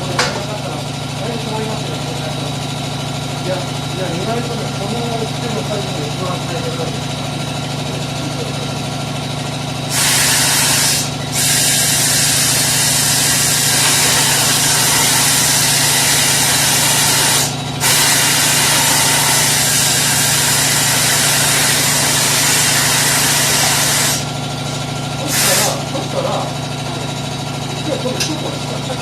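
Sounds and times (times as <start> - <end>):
low machine hum: 0.0 - 29.0
compressed air hissing into tire: 9.9 - 24.3, 25.2 - 25.8.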